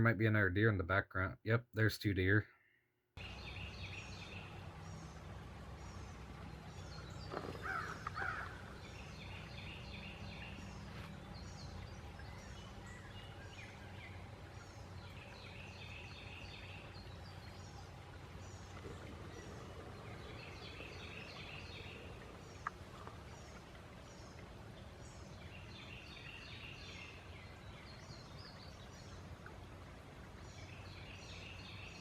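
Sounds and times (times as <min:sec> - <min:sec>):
low hum: 0:03.2 - 0:25.6.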